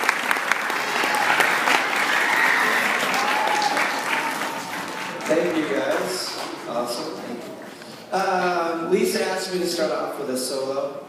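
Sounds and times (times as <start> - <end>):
audience applauding: 0.0 - 7.8.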